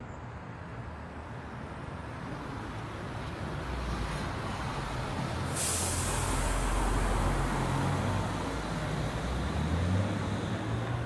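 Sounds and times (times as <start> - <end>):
vehicle approaching: 4.7 - 11.0
tyre hiss: 5.5 - 7.8.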